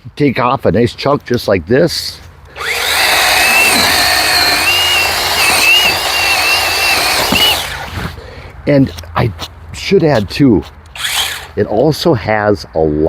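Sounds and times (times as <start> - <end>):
chain cutting wood: 2.6 - 8.1, 10.9 - 11.6
mini chainsaw whining: 2.6 - 8.1, 11.0 - 11.6.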